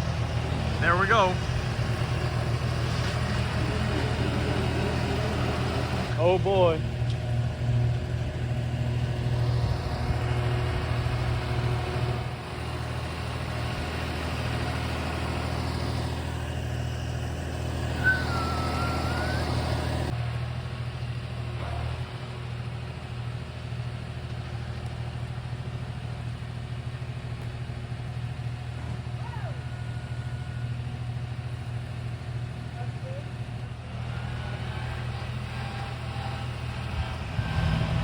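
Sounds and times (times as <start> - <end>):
tractor engine running: 0.0 - 38.0.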